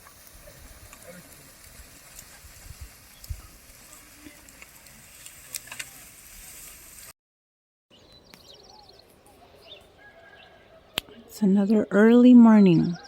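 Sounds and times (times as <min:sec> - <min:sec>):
steady outdoor hiss: 0:00.0 - 0:07.1
bird chirping: 0:07.9 - 0:13.0.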